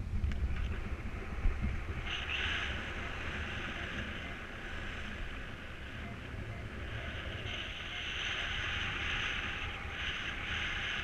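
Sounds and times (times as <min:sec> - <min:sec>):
wind buffeting microphone: 0:00.0 - 0:11.0
airy hiss: 0:01.2 - 0:11.0.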